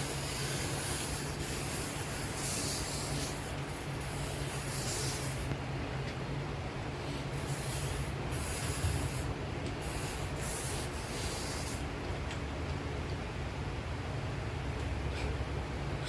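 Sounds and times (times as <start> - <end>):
rasping against abrasive: 0.0 - 5.5, 7.2 - 11.9.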